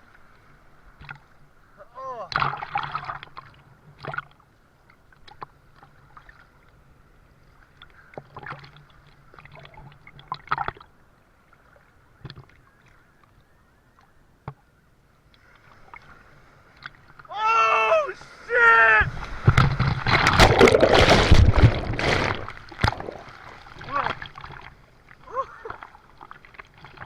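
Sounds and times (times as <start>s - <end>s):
water splashing and sloshing: 0.0s - 1.6s, 2.2s - 13.4s, 14.3s - 27.0s.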